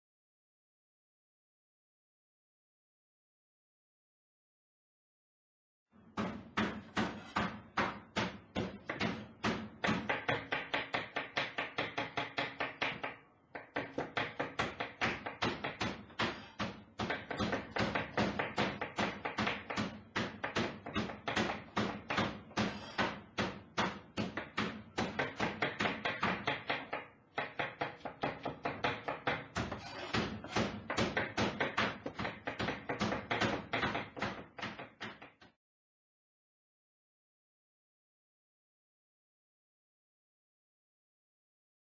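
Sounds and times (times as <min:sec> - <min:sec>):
meat mallet pounding: 0:06.1 - 0:35.4
knife chopping on cutting board: 0:06.2 - 0:35.4.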